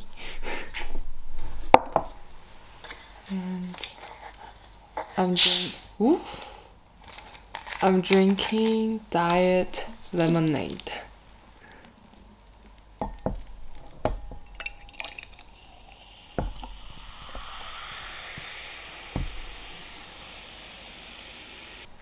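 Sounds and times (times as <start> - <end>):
fizzy drink pouring into glass: 5.4 - 5.8, 14.9 - 21.9
can and glass knocking: 16.4 - 17.4, 19.2 - 19.5.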